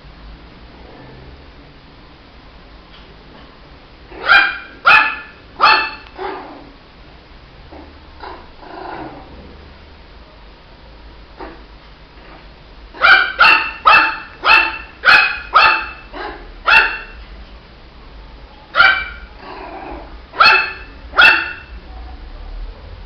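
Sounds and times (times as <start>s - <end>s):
puppy barking: 4.1s - 6.7s, 13.0s - 17.2s, 18.7s - 19.7s, 20.3s - 21.8s.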